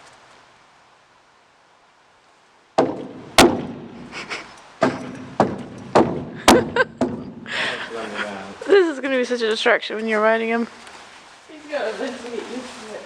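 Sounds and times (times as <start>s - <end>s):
horse hooves banging on wood: 2.8s - 7.5s.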